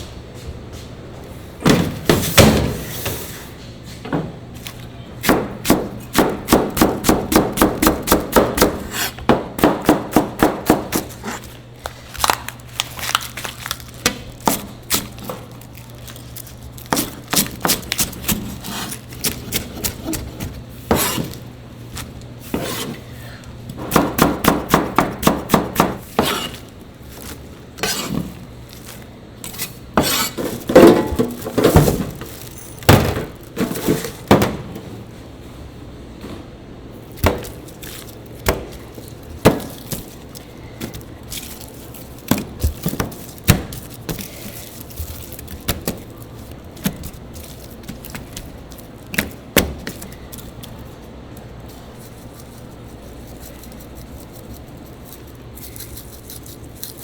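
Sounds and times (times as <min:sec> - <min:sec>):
steady low hum: 0:00.0 - 0:57.0
knife chopping on wooden board: 0:05.2 - 0:11.4, 0:19.3 - 0:21.4, 0:30.0 - 0:32.0.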